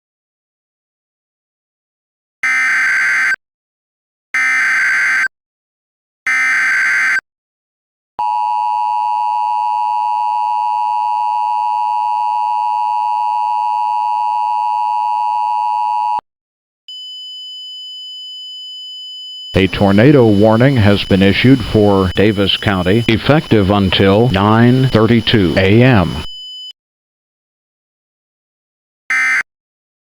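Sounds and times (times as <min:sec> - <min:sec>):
buzzy digital header bursts: 0:19.6 - 0:26.3.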